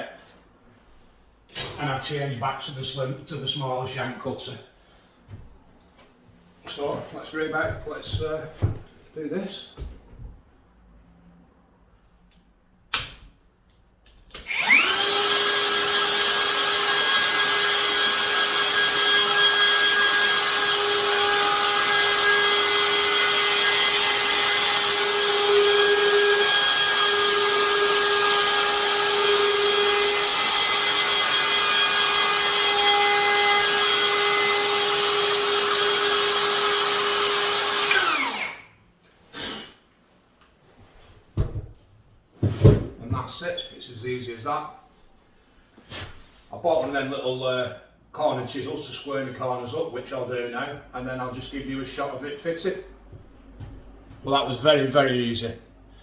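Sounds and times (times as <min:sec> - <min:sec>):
router motor whining: 0:14.4 - 0:38.6.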